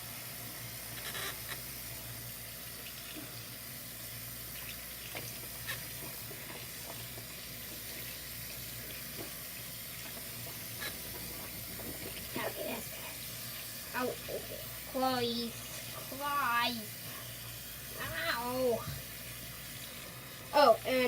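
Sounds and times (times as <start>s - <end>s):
tap running into basin: 4.5s - 13.8s, 18.7s - 20.1s.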